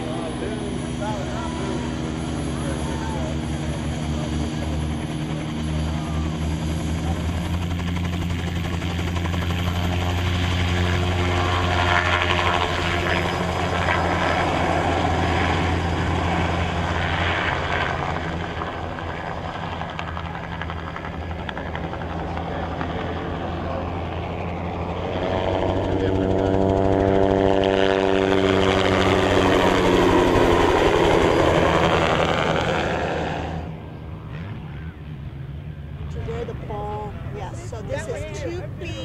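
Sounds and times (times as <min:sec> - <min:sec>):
helicopter rotor droning: 0:00.0 - 0:39.0.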